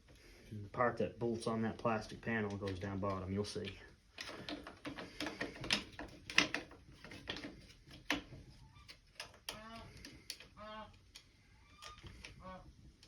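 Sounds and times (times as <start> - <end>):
metal parts clicking and knocking: 2.6 - 10.5.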